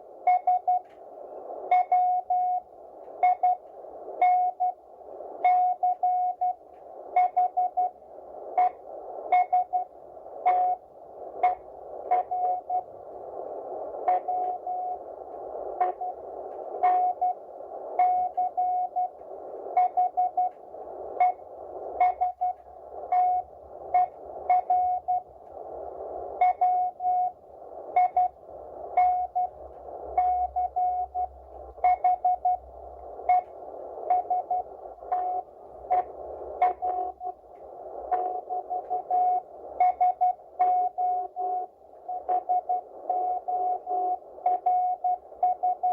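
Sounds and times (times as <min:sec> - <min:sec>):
radio band noise hiss: 0:00.0 - 0:45.9
morse code tone: 0:10.5 - 0:10.8, 0:16.8 - 0:17.4, 0:33.2 - 0:37.4.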